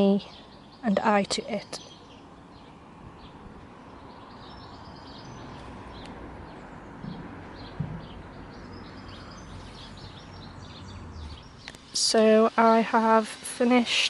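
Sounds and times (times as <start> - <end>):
birds chirping: 0.0 - 14.0.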